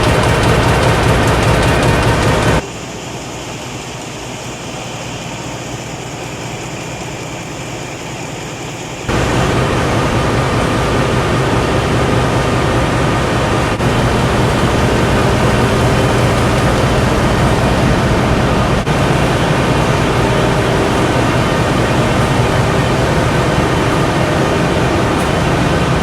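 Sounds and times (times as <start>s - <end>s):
machine clatter: 0.0s - 2.7s, 3.7s - 26.0s
low machine hum: 9.1s - 26.0s.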